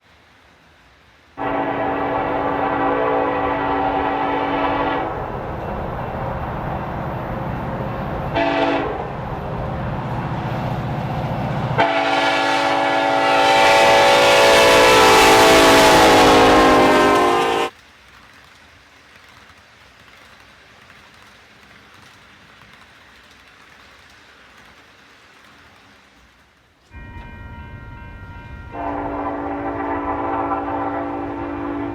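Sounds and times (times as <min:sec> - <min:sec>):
locomotive horn blasts: 0:01.4 - 0:05.3, 0:08.3 - 0:09.2, 0:11.8 - 0:17.7, 0:26.9 - 0:31.9
diesel locomotive engine running: 0:01.4 - 0:17.7, 0:26.9 - 0:31.9.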